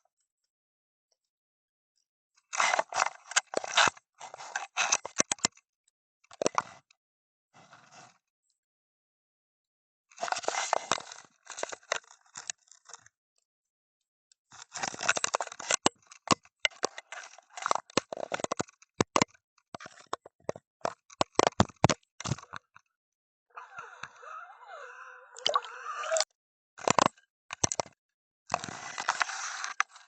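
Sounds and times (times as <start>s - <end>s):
underwater clicking and crackling: 25.4s - 25.6s.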